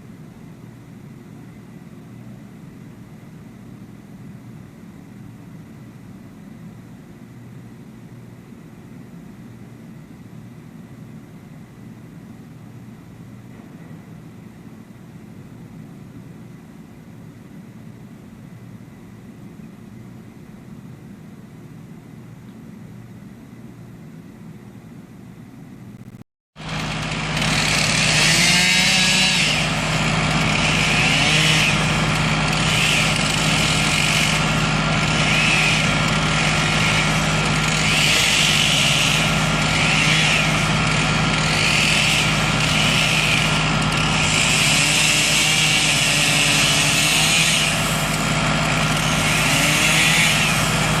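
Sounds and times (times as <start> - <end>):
heavy machine engine running: 26.0 - 51.0.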